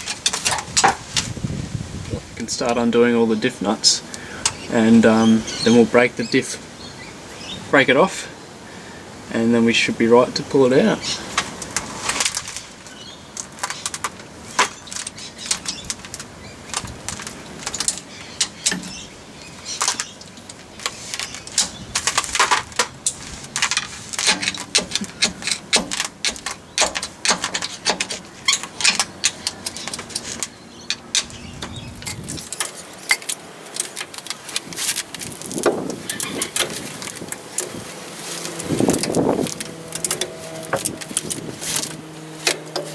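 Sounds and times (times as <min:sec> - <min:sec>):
metal tools clinking: 0:14.6 - 0:42.9.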